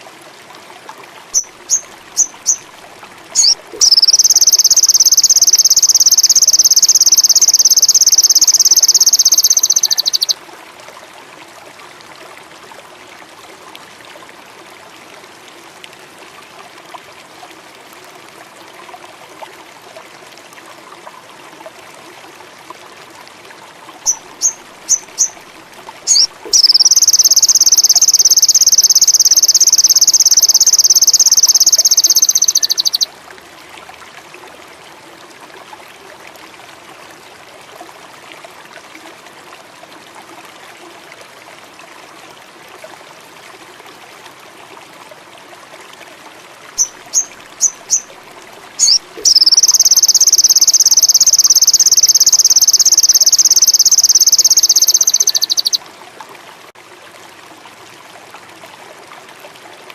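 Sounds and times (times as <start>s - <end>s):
faint background hiss: 0.0s - 59.9s
bird trill: 1.4s - 2.6s, 3.4s - 10.4s, 24.1s - 25.4s, 26.1s - 33.1s, 46.8s - 48.1s, 48.8s - 55.8s.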